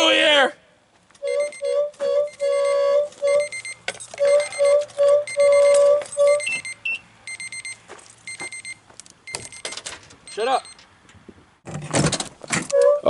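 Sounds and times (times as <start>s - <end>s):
alarm beeping: 1.2s - 10.8s.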